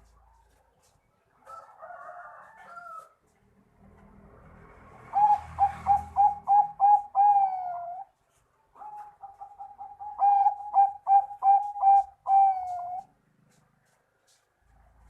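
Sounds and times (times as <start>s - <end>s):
dove cooing: 5.1s - 8.2s, 8.8s - 13.2s.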